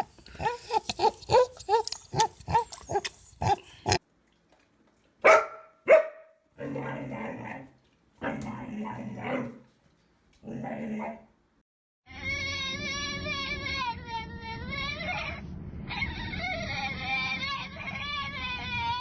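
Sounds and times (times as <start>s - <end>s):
dog barking: 5.2s - 7.0s
animal cries: 14.7s - 19.0s.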